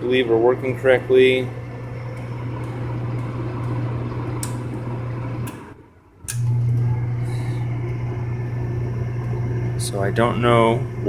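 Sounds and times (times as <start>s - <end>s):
furnace humming: 0.0s - 11.0s
furnace click: 1.8s - 6.4s.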